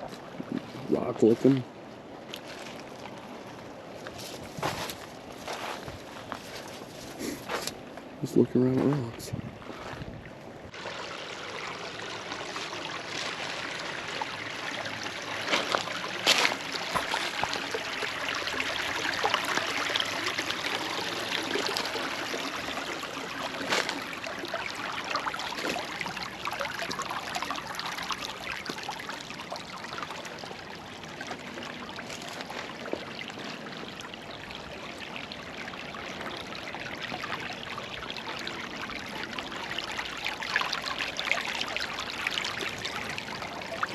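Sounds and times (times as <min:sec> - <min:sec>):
creek flowing over rocks: 0:10.7 - 0:43.9.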